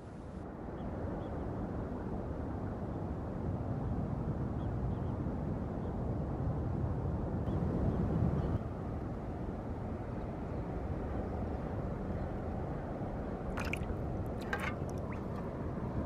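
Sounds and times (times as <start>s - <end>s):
wind rumble on microphone: 0.0s - 16.0s
water splashes and drips: 13.5s - 15.5s.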